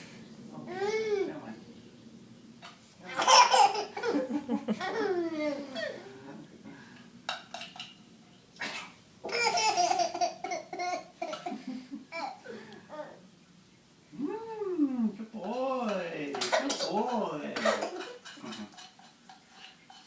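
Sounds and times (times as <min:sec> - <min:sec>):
baby belly laughter: 0:03.1 - 0:06.0, 0:09.2 - 0:12.4.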